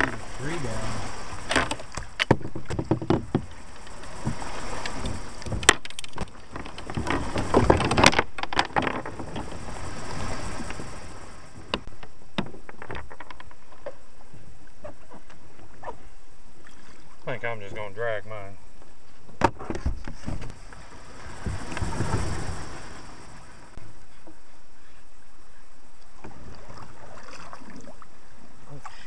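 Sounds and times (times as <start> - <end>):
steady rushing noise: 0.0 - 2.1, 20.2 - 23.8
kayak knocking and scraping on wood: 0.0 - 9.8, 11.6 - 16.0, 18.8 - 20.8.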